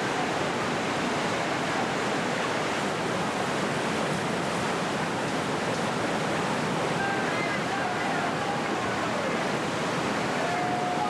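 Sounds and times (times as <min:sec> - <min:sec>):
whitewater rushing over rapids: 0:00.0 - 0:11.0.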